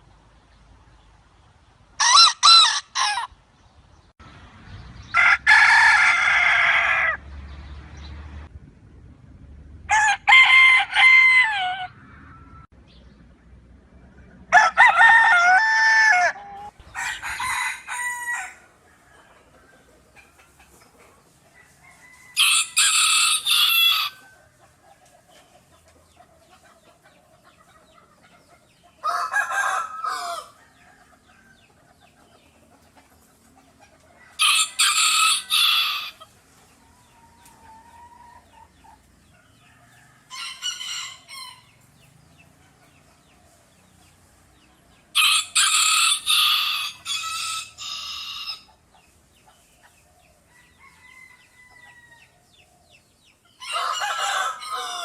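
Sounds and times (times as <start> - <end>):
rooster crowing: 5.2 - 7.2, 9.9 - 12.7, 14.5 - 19.6, 21.5 - 24.4, 29.0 - 31.7, 34.2 - 36.3, 39.4 - 41.8, 45.1 - 48.7, 50.5 - 52.4, 53.6 - 55.0.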